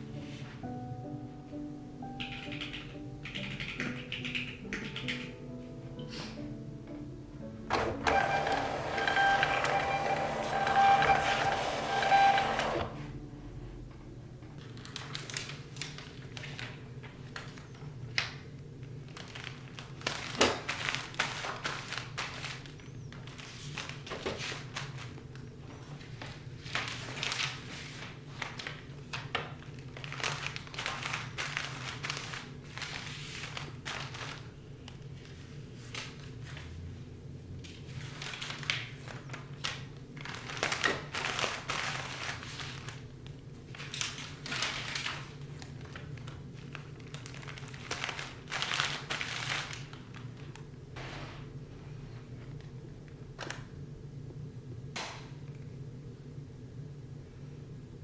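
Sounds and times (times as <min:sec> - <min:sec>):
packaging crinkling and rustling: 0:14.6 - 0:37.0, 0:37.6 - 0:50.8.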